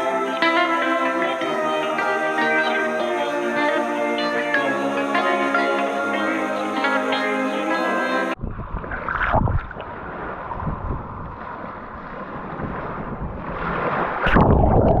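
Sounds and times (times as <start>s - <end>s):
wind buffeting microphone: 8.4s - 15.0s.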